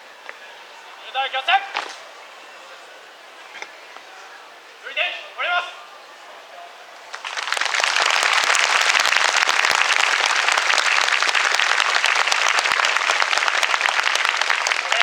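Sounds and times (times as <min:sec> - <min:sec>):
audience applauding: 0:07.1 - 0:15.0.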